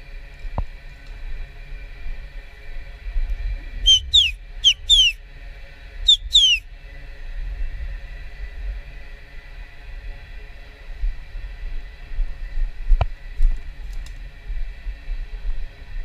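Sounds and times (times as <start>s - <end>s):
short high whistled notes: 3.9s - 5.2s, 6.1s - 6.6s.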